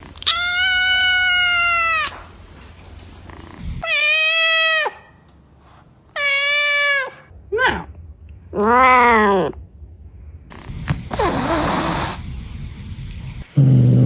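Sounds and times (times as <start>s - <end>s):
cat meowing: 0.1s - 2.3s, 3.8s - 5.2s, 6.1s - 7.9s.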